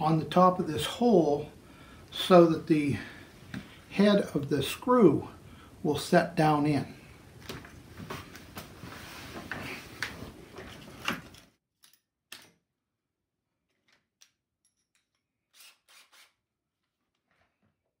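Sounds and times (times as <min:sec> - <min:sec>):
tools clicking and knocking: 0:13.7 - 0:15.4.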